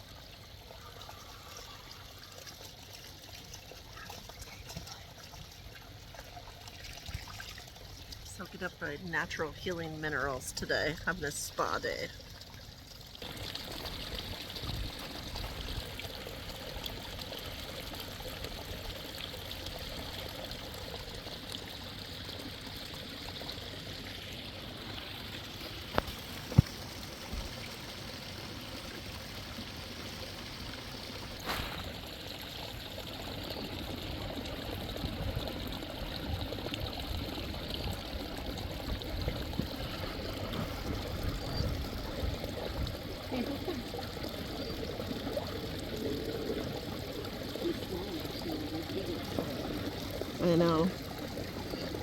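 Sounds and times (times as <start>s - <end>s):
water flowing and trickling: 0.0s - 52.0s.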